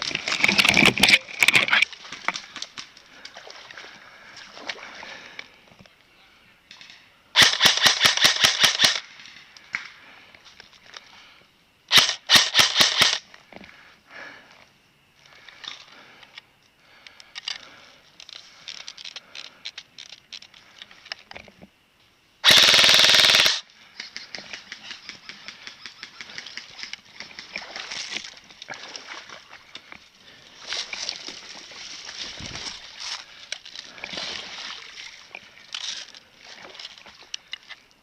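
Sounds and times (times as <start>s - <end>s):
airsoft guns firing: 7.4s - 9.2s, 11.9s - 13.2s, 22.4s - 23.6s.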